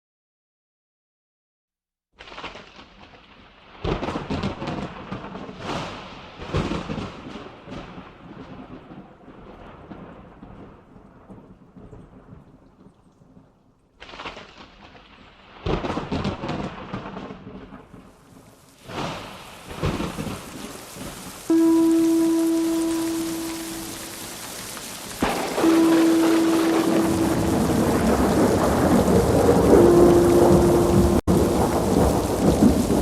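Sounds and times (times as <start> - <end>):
rain falling: 2.2 - 33.0
thunder claps: 18.9 - 33.0.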